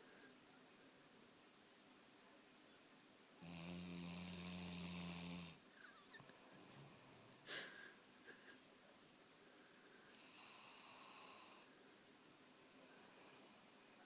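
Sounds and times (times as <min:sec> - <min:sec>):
pet snoring: 0:03.4 - 0:05.6, 0:10.2 - 0:11.7.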